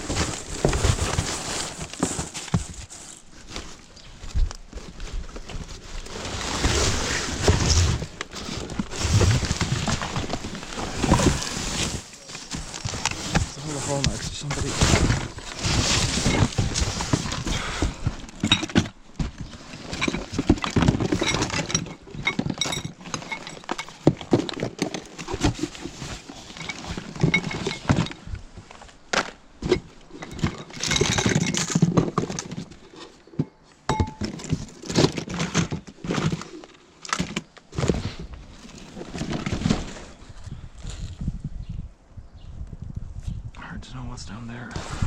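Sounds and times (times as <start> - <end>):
bags and boxes rustling: 0.0 - 41.2
items knocking and clinking: 7.4 - 38.0.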